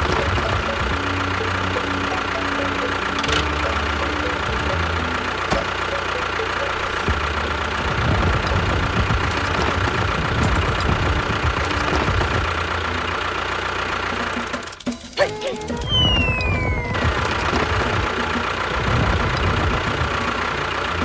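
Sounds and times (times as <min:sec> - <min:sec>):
small motor whining: 0:00.0 - 0:13.6, 0:14.2 - 0:21.0.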